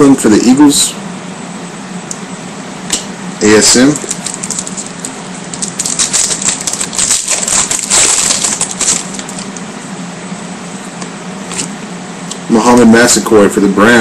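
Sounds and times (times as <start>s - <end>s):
trading cards being flipped: 11.5s - 11.8s.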